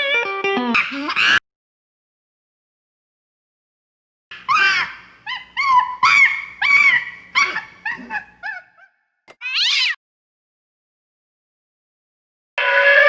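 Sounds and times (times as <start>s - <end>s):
cartoon animal yelps: 0.7s - 1.4s, 4.4s - 10.0s, 12.6s - 13.0s.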